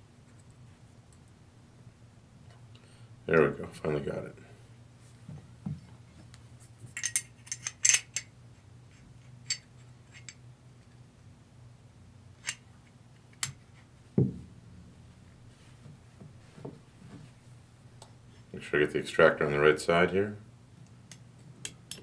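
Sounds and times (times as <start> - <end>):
metallic clicks and clinks: 7.0 - 8.3
dull thump: 14.2 - 14.5.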